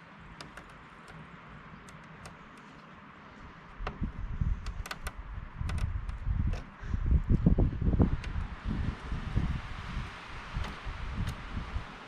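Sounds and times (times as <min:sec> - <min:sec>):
plastic parts clicking: 0:00.2 - 0:02.9
low bumps and rumbling: 0:03.4 - 0:12.0.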